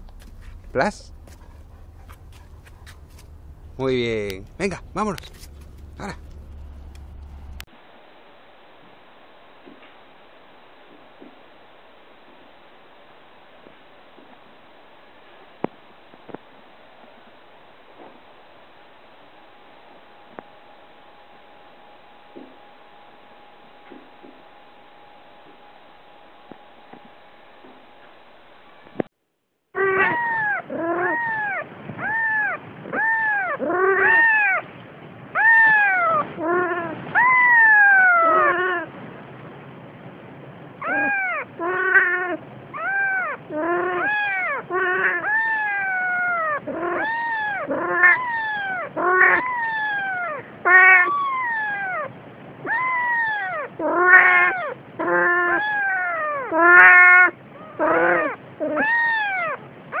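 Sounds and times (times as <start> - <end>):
cat meowing: 29.8 - 34.6, 35.4 - 38.9, 40.8 - 60.0.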